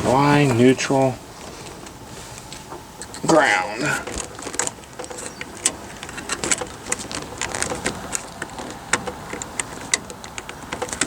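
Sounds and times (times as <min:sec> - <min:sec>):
faint high steady whine: 0:00.0 - 0:08.6
clicks of handling electrical wires: 0:01.4 - 0:11.0.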